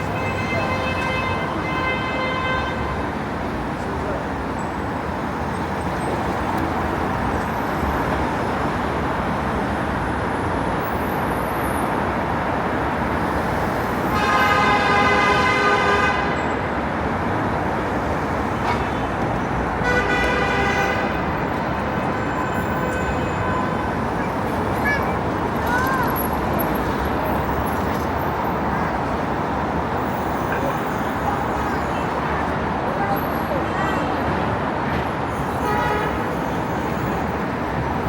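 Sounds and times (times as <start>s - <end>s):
road traffic noise: 0.0s - 38.0s
vehicle horn honking: 14.2s - 16.4s, 19.8s - 21.2s, 35.6s - 36.4s.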